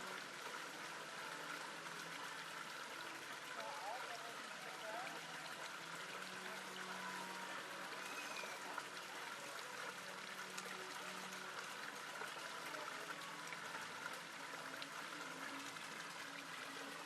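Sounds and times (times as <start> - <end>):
running water: 0.0 - 17.0
faint voices: 0.9 - 17.0.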